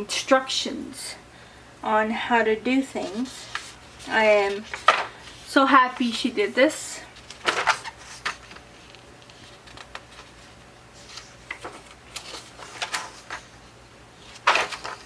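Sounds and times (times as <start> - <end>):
paper pages rustling: 3.0 - 6.3, 7.0 - 15.0.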